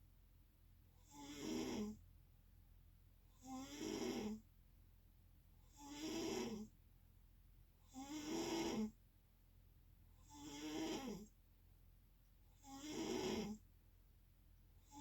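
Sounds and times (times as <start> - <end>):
person snoring: 12.7 - 13.6.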